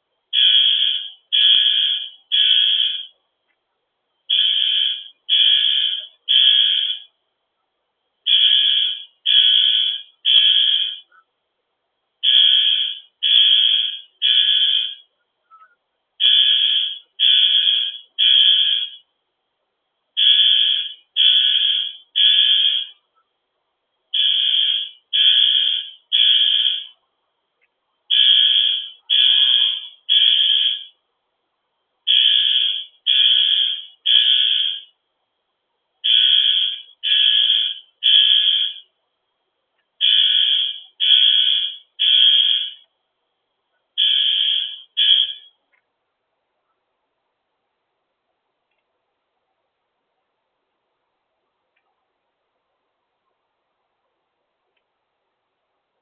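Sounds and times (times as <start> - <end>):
fire alarm horn beeping: 0.3 - 3.2, 4.2 - 7.1, 8.3 - 11.2, 12.2 - 19.1, 20.2 - 23.1, 24.2 - 27.0, 28.1 - 31.0, 32.1 - 35.0, 36.0 - 38.9, 40.0 - 42.9, 44.0 - 45.6.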